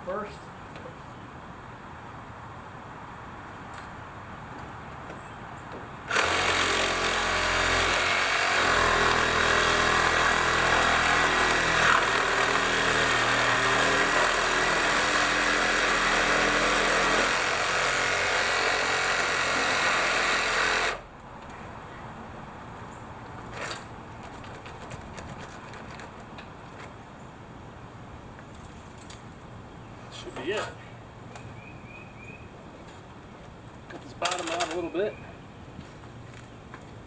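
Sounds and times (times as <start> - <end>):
reciprocating saw cutting wood: 6.1 - 21.1.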